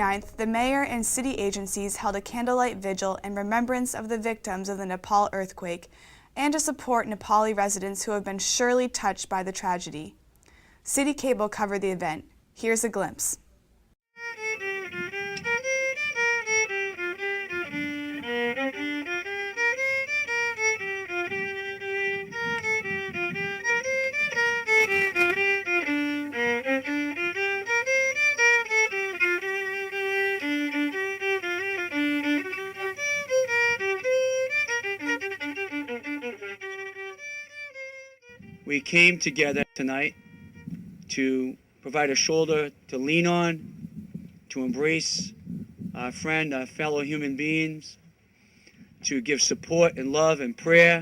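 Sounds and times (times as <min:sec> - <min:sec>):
solo bowed string melody: 0:14.2 - 0:41.0.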